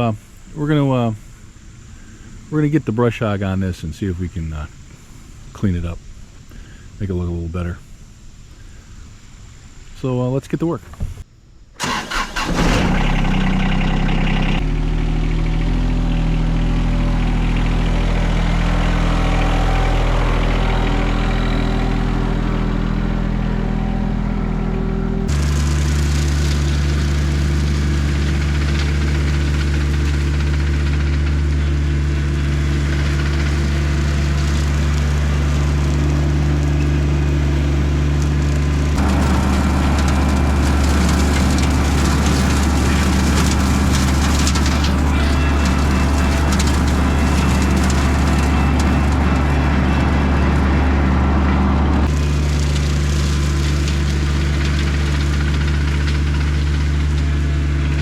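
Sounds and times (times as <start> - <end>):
tractor engine running: 9.4 - 58.0
brush mower: 11.8 - 58.0.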